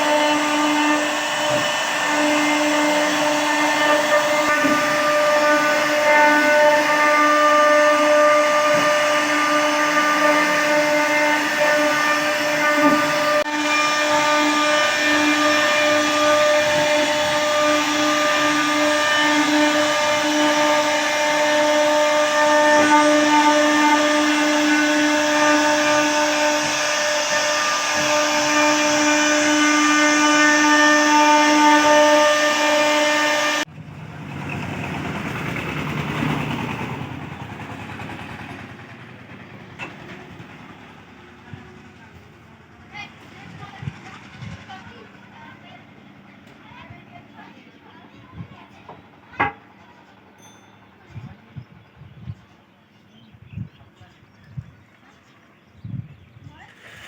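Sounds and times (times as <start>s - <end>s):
router bit cutting wood: 0.0s - 6.9s, 8.3s - 33.6s
router spindle whine: 0.0s - 33.6s.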